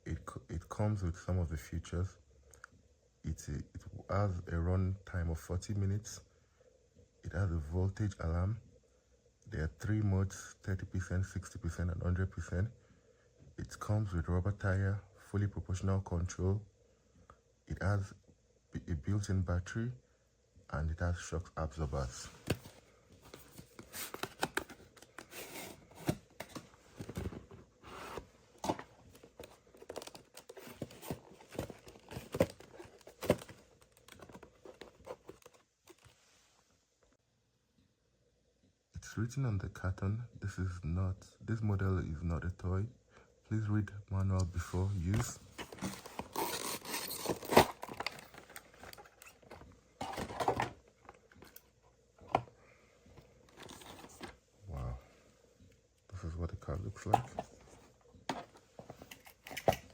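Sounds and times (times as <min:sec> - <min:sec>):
cardboard packaging tearing and crinkling: 0:23.9 - 0:36.0, 0:45.6 - 0:50.7.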